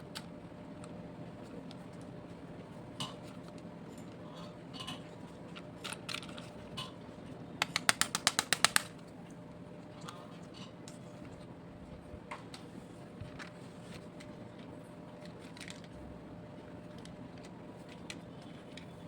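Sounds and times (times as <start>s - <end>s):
toy vehicles clicking and tapping: 7.6s - 8.9s.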